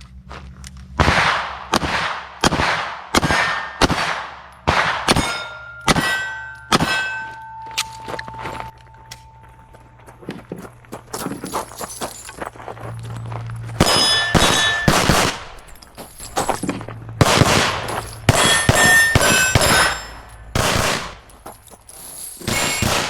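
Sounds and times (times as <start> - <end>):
pistol shots: 1.0 - 7.3, 13.8 - 15.8, 17.2 - 21.3, 22.4 - 23.0
steel plates ringing when hit: 5.0 - 9.4, 13.8 - 16.8, 17.8 - 21.3, 22.2 - 23.0.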